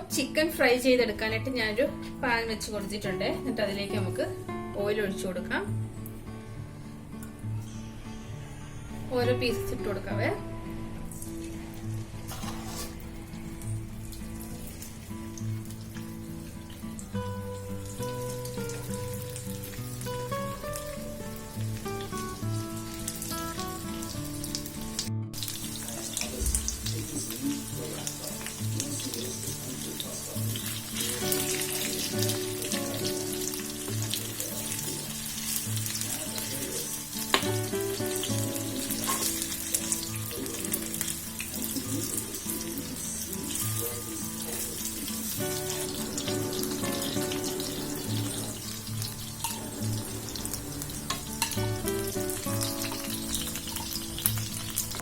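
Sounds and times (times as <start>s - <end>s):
chicken deep-frying in oil: 21.4s - 55.0s
background music with beat: 26.2s - 27.8s.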